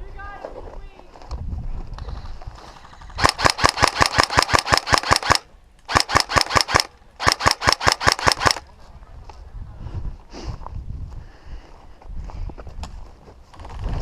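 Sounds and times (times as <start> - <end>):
airsoft gun rapid firing: 3.2 - 8.6.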